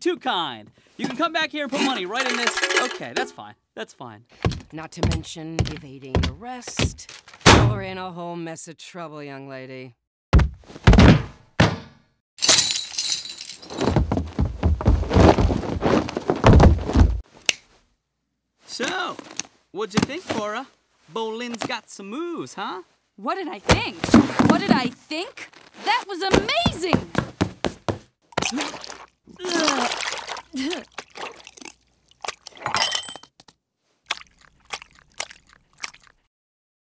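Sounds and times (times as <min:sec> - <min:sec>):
glass breaking: 0:12.4 - 0:13.9, 0:32.6 - 0:33.3
heavy thuds: 0:13.6 - 0:17.2.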